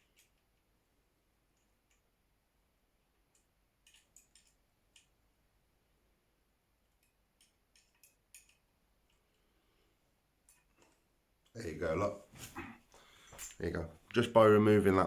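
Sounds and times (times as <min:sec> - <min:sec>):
small metal parts clicking: 0:00.0 - 0:00.5, 0:03.3 - 0:05.1, 0:06.8 - 0:09.4, 0:10.4 - 0:11.0.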